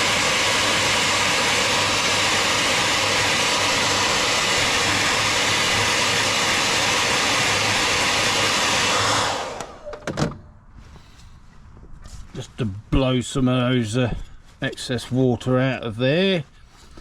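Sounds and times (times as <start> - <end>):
heat gun blowing: 0.0 - 10.1, 16.7 - 17.0.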